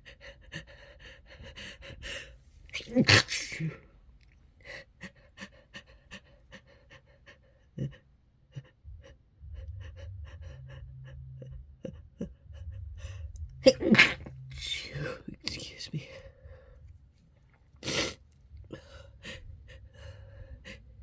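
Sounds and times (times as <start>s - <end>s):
person panting: 0.0s - 2.4s, 17.8s - 21.0s
person sneezing: 2.7s - 3.8s, 13.6s - 16.0s, 17.8s - 18.2s.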